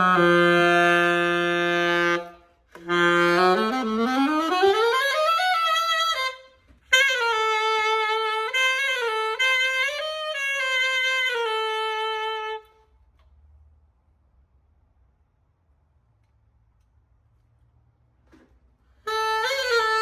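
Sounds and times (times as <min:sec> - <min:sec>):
saxophone playing sustained notes: 0:00.0 - 0:12.9, 0:19.0 - 0:20.0.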